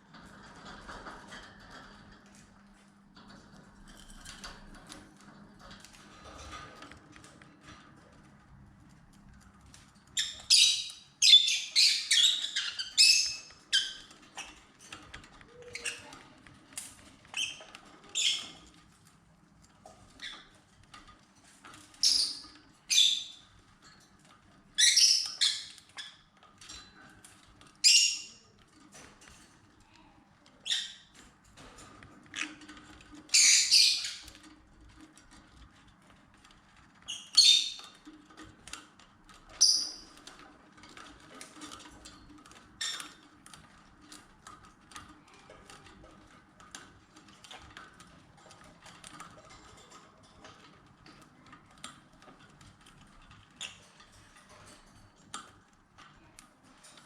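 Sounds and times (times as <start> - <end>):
lovebirds chirping and squawking: 10.1 - 18.7, 21.8 - 23.5, 24.7 - 26.7, 27.8 - 28.5, 30.6 - 31.2, 32.3 - 34.5, 37.1 - 38.0, 39.5 - 40.3.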